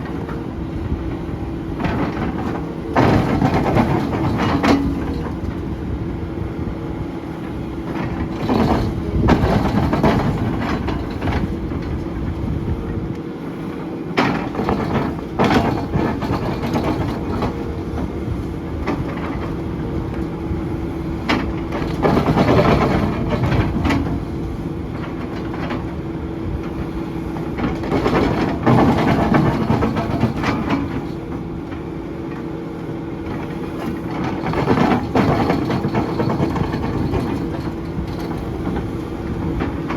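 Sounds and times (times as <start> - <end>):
excavator engine and hydraulic hum: 0.0 - 39.9
ripper grinding and clanking: 14.2 - 19.6, 21.2 - 24.4, 33.4 - 39.9.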